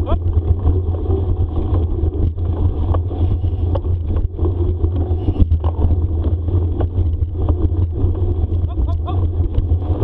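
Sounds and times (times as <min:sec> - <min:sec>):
bicycle riding on dirt trail: 0:00.0 - 0:10.0
rattles and clicks: 0:00.0 - 0:10.0.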